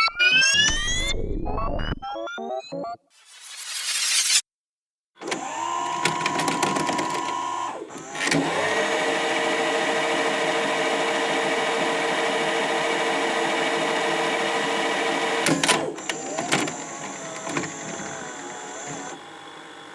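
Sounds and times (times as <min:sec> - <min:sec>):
mechanical clicks and clunks: 0:05.2 - 0:08.6, 0:15.4 - 0:19.2
tape machine motor whirring: 0:05.2 - 0:19.9.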